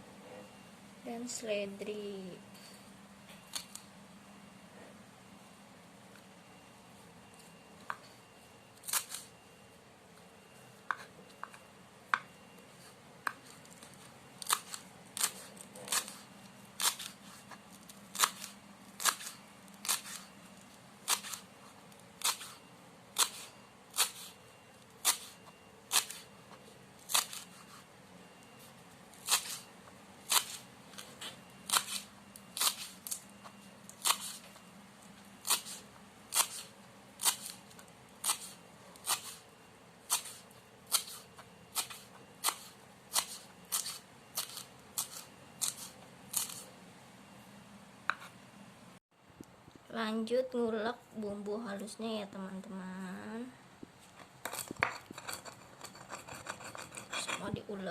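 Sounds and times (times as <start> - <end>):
knife chopping celery on board: 27.1 - 27.7, 38.2 - 39.4, 40.1 - 46.6.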